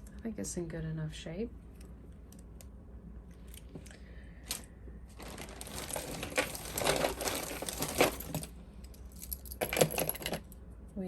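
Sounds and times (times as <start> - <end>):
jewelry items crinkling and rustling: 4.4 - 10.6
small crackles: 4.5 - 8.4.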